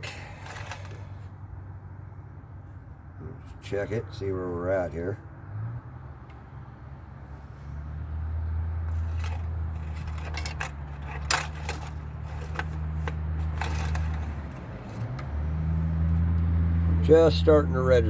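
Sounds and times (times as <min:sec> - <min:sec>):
metallic scrapes and clicks: 0:00.0 - 0:01.2, 0:08.9 - 0:15.3.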